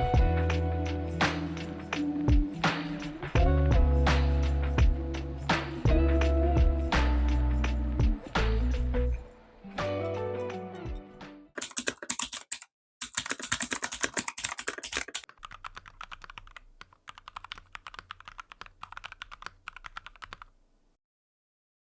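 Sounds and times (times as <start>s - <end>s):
music: 0.0s - 11.6s
mechanical keyboard typing: 11.6s - 20.5s.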